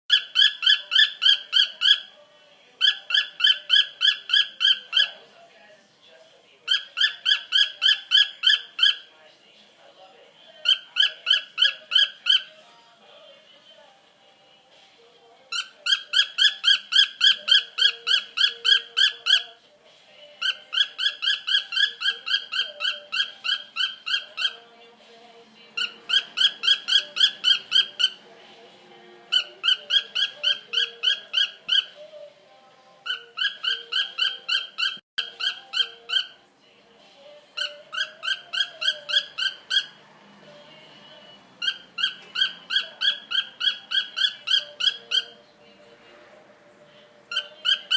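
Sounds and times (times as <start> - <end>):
cockatiel whistled chirps: 41.6 - 45.3.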